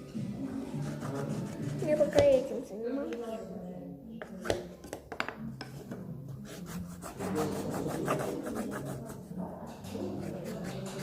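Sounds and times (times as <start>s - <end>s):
stick scraping on clay: 6.4s - 9.2s, 9.8s - 11.0s.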